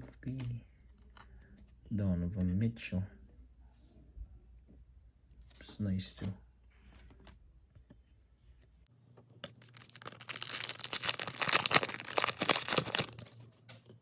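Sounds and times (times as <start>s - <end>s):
foil wrapper tearing and crinkling: 9.4s - 13.4s.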